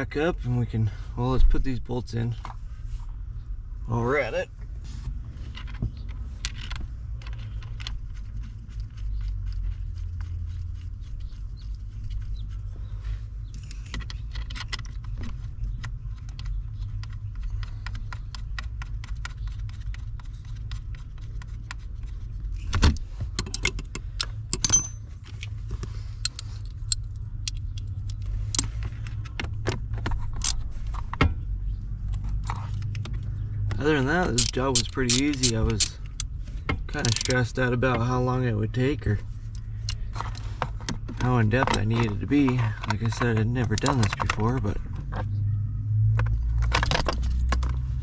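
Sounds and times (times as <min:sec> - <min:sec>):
steady low hum: 0:00.0 - 0:48.0
metal tools and bolts clinking: 0:23.4 - 0:25.6, 0:33.7 - 0:36.2.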